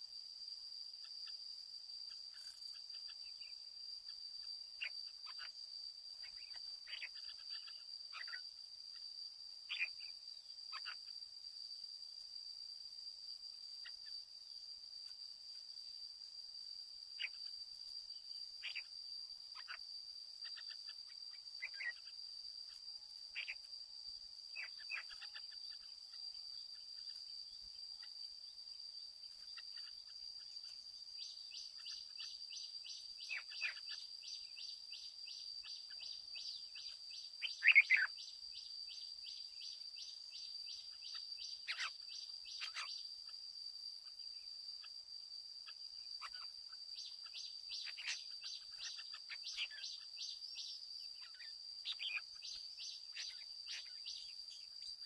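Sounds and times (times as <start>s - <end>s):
high-pitched insect drone: 0.0s - 55.0s
pulsing insect trill: 0.0s - 55.0s
bird chirps and whistles: 35.7s - 38.3s.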